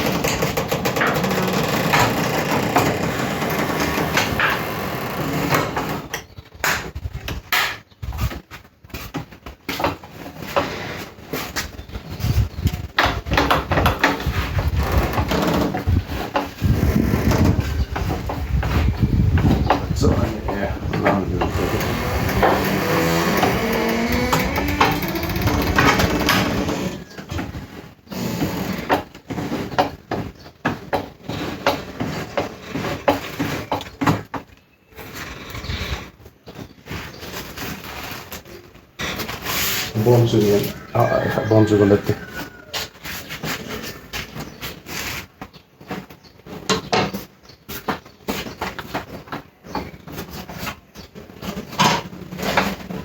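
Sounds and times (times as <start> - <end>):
rustling: 34.9 - 41.4, 42.0 - 53.0.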